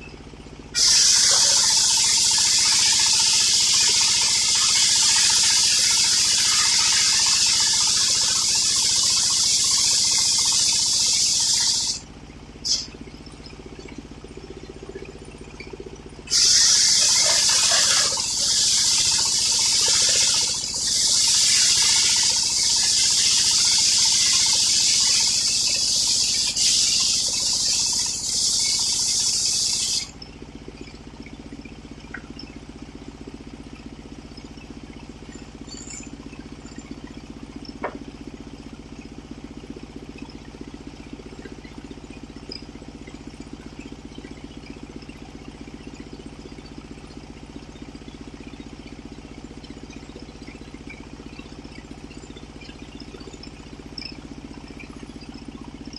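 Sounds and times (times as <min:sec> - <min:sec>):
engine idling: 0:00.0 - 0:55.9
saw blade cutting log: 0:16.3 - 0:30.1.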